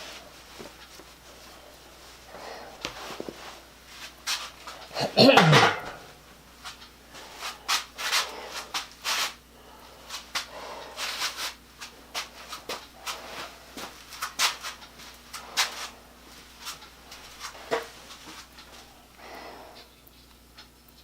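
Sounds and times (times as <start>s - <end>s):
rubbing and scraping: 6.6s - 9.4s, 10.0s - 18.5s.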